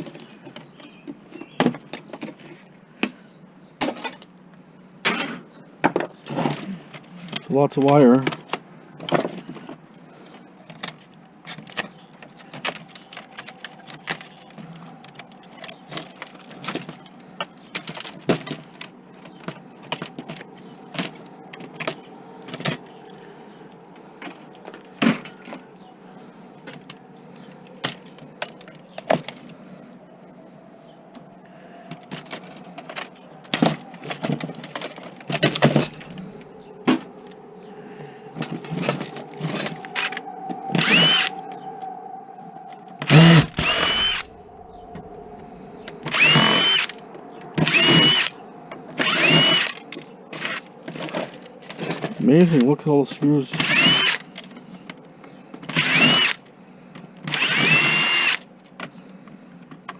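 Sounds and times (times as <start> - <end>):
faint steady hum: 0.0 - 59.9
plastic and metal parts clattering: 3.8 - 4.3, 5.1 - 23.6, 26.6 - 30.0, 31.9 - 37.1, 38.4 - 40.2, 49.0 - 52.7.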